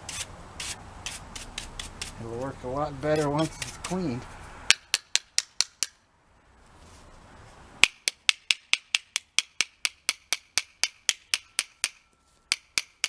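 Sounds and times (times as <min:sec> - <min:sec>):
soft hiss: 0:00.0 - 0:04.7.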